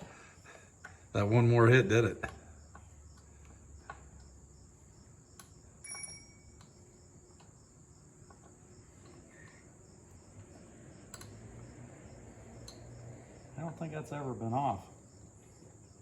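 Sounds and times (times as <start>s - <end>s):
crickets chirping: 0.0s - 16.0s
small clicks: 5.3s - 11.6s
ringing clink: 5.8s - 6.6s.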